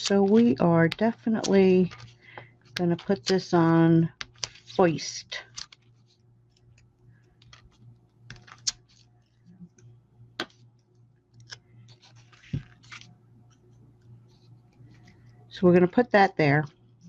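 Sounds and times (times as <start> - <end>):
faint steady hum: 0.0 - 17.0
paper rustling: 1.2 - 2.2, 4.2 - 4.8, 5.4 - 5.9, 11.9 - 13.1.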